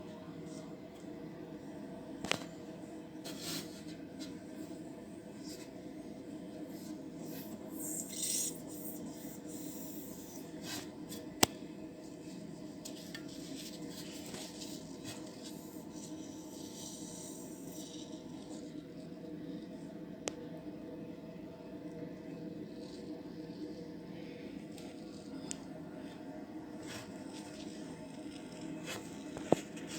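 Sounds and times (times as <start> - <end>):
steady low hum: 0.0 - 29.9
rubbing and scraping handling noises: 12.2 - 17.0.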